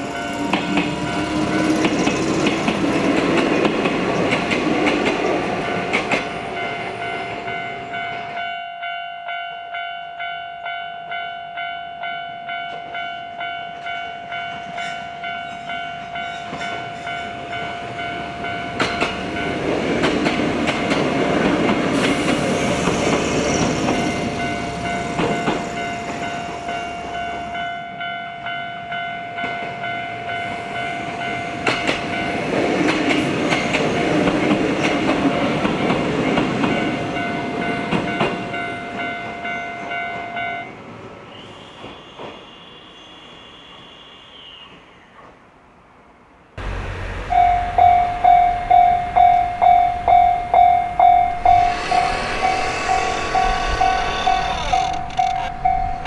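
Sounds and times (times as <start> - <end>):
trains running past: 0.0 - 45.9, 46.6 - 56.0
level crossing alarm dings: 46.6 - 56.0.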